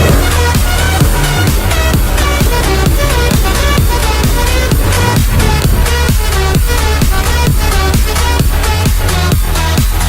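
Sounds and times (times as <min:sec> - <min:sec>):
steady kick drum: 0:00.0 - 0:10.0.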